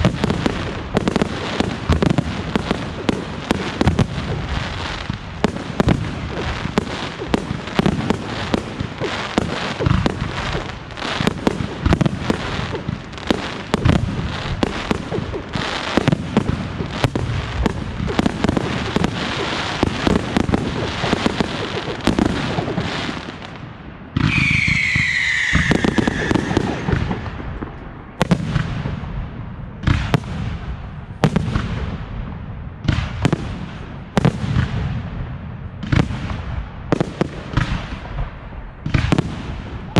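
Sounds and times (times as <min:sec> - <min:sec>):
fireworks bursting and crackling: 0:00.0 - 0:39.9
falling firework whistle: 0:24.2 - 0:27.4.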